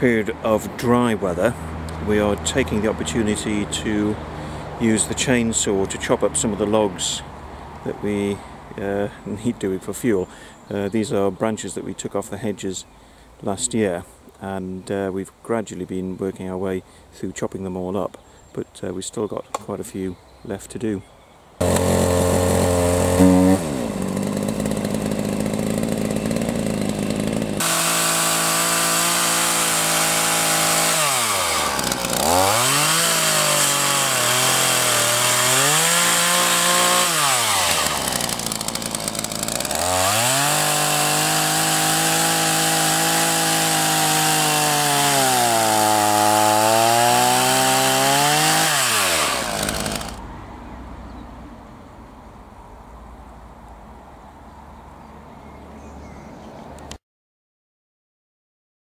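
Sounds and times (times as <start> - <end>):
chainsaw cutting logs: 21.6 - 50.2.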